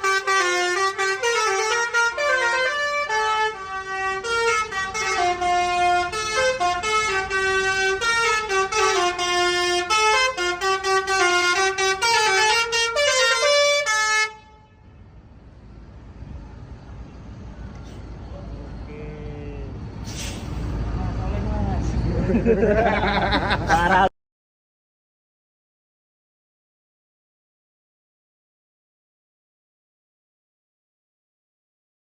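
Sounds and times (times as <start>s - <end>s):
multi-tone air horn playing a tune: 0.0s - 14.9s.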